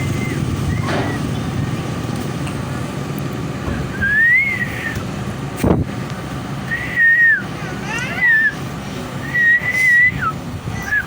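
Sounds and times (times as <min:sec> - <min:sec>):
rumble of engines and traffic: 0:00.0 - 0:11.0
person whistling: 0:03.9 - 0:05.0, 0:06.7 - 0:07.4, 0:09.2 - 0:11.0.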